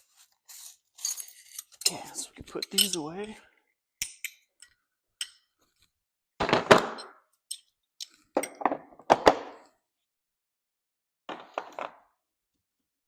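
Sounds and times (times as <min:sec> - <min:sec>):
hardware and tools clattering: 0:00.7 - 0:03.4.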